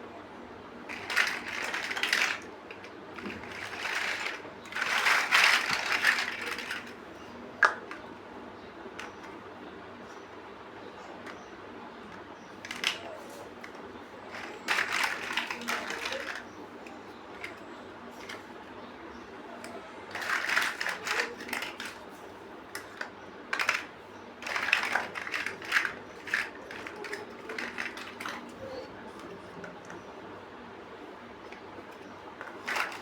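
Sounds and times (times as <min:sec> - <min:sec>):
plastic bricks clicking and rattling: 0:00.9 - 0:07.0, 0:12.1 - 0:17.6, 0:19.6 - 0:22.1, 0:22.7 - 0:30.0, 0:31.5 - 0:33.0.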